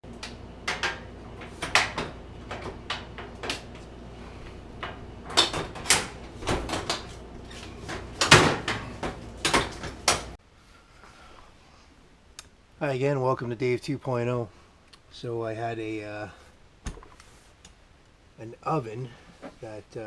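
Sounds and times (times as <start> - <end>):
steady low hum: 0.0 - 12.8
irregular clicks and knocks: 0.1 - 3.9, 4.8 - 7.2, 7.8 - 10.4.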